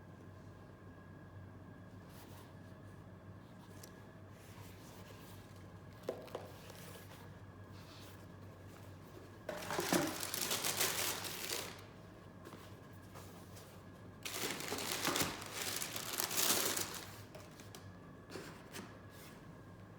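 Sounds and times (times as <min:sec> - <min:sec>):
packing paper crumpling: 0:09.5 - 0:12.0, 0:14.2 - 0:17.9.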